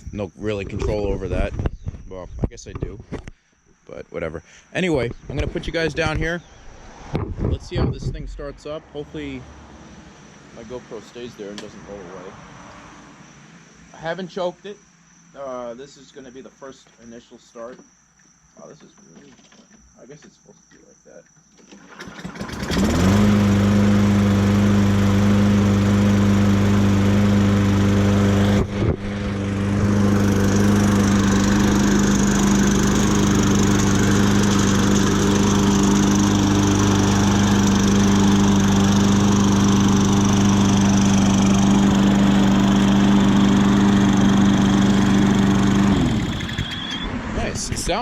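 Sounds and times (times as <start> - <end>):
lawn mower engine running: 21.6 - 47.2.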